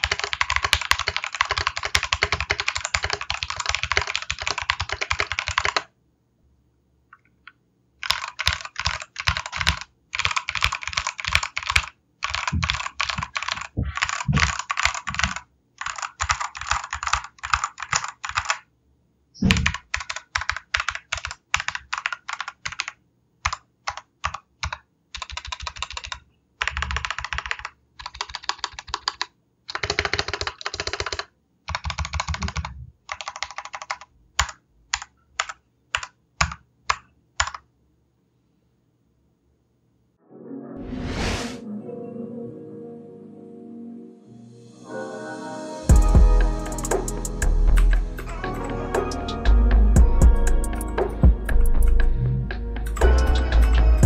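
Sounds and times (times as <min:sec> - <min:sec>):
mechanical keyboard keystrokes: 0:00.0 - 0:05.9, 0:08.0 - 0:18.6, 0:19.4 - 0:37.6.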